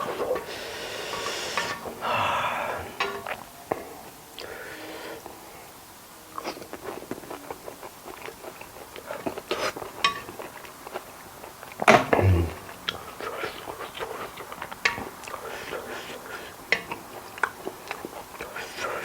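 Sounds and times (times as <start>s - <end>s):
small crisp clicks and crackles: 6.3s - 11.9s, 12.8s - 19.0s
person chewing food: 6.3s - 19.0s.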